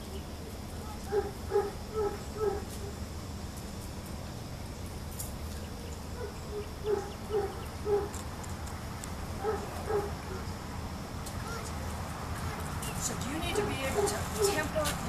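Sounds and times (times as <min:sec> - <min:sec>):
dove cooing: 0:00.0 - 0:03.0, 0:06.1 - 0:08.2, 0:09.4 - 0:10.6.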